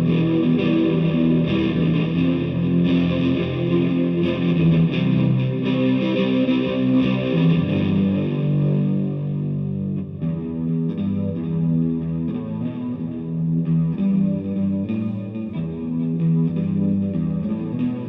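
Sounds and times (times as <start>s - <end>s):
distorted electric guitar: 0.0s - 18.0s.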